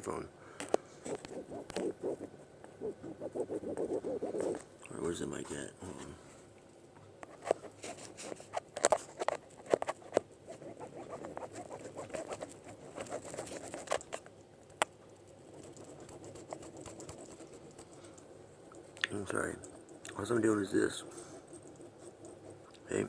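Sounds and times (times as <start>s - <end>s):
handling noise clicks and rustling: 7.2s - 10.3s.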